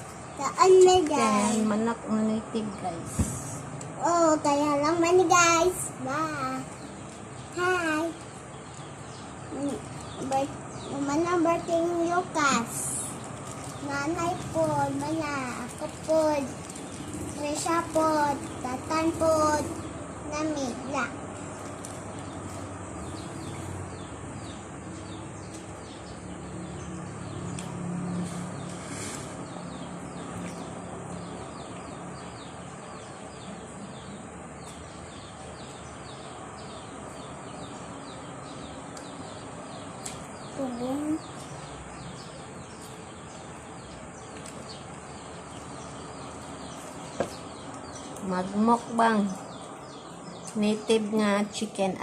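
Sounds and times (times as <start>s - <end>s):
steady background hum: 0.0s - 52.0s
bird chirping: 4.2s - 52.0s.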